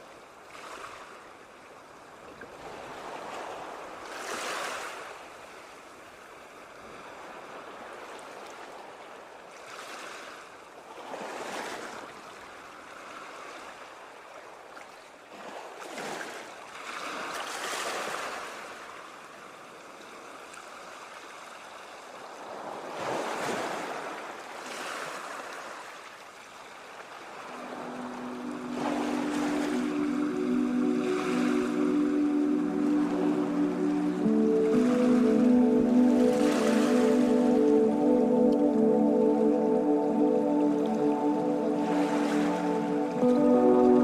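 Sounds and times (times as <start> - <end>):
ocean waves breaking: 27.1 - 44.0.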